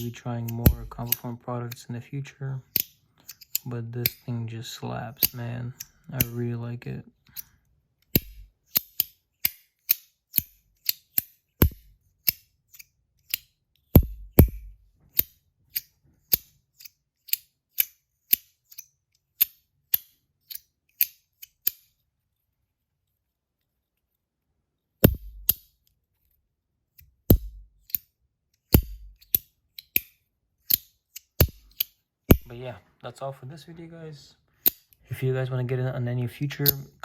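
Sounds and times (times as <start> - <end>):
fidget slider clicking: 0.0 - 1.8, 2.7 - 4.2, 7.2 - 22.0, 27.0 - 32.4, 36.5 - 36.9.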